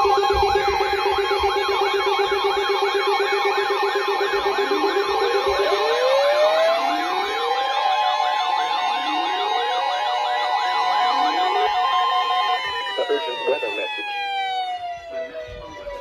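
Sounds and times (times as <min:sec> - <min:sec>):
fast siren yelp: 0:00.0 - 0:16.0
pulsing low siren tone: 0:00.0 - 0:16.0
rising siren wails: 0:00.0 - 0:16.0
steady siren tones: 0:00.0 - 0:16.0.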